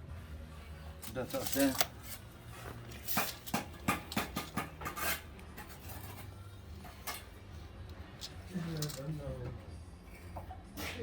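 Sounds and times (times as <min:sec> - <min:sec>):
trowel tapping and scraping brick: 0:03.2 - 0:05.2.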